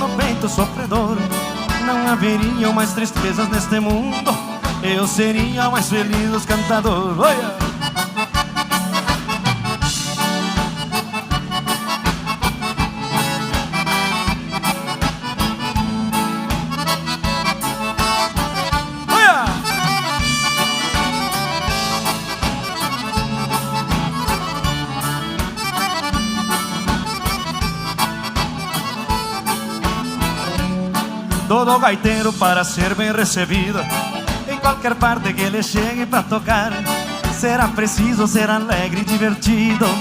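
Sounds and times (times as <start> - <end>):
accordion dance music: 0.0 - 40.0
pulsing bass beat: 0.0 - 40.0
person shouting: 19.1 - 19.8.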